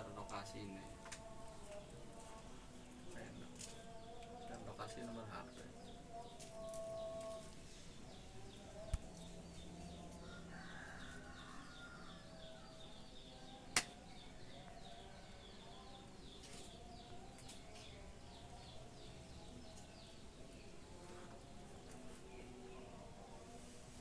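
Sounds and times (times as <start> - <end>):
sharp click: 13.8 - 14.0.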